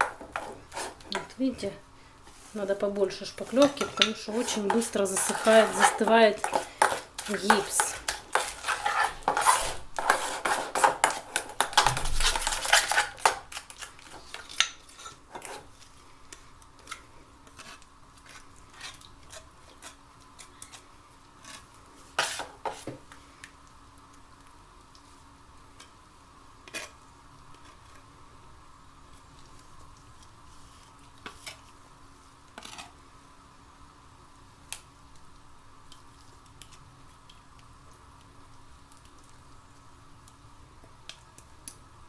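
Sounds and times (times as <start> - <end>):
spatula scraping a container: 0.0 - 1.7, 2.3 - 15.7, 21.4 - 22.9, 32.6 - 33.0.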